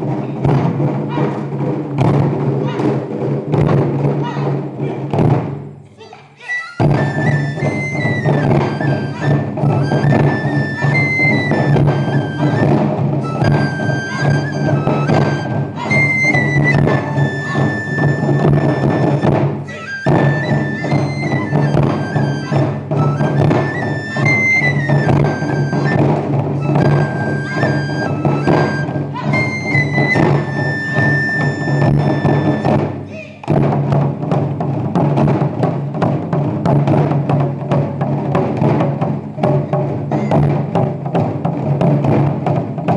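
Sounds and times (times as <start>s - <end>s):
taiko drums playing: 0.0s - 5.8s, 6.8s - 42.9s
high flute melody: 6.4s - 33.1s.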